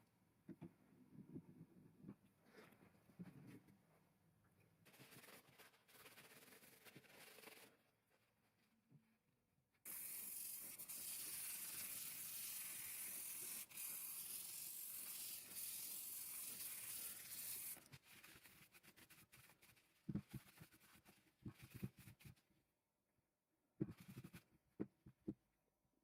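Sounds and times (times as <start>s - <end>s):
aerosol spray can hissing: 9.9s - 17.8s.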